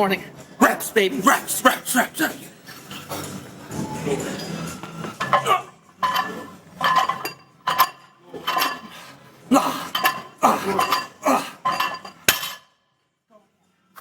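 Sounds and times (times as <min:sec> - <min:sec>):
metal weights clanking: 0:04.2 - 0:09.0.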